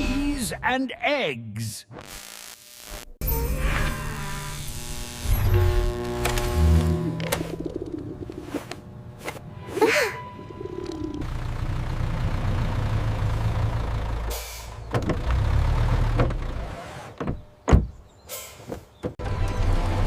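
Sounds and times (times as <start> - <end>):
low engine rumble: 6.9 - 16.5.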